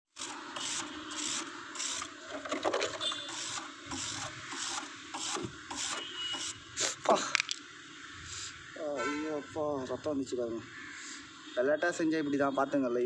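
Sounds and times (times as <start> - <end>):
sharp scrapes: 0.2 - 7.2.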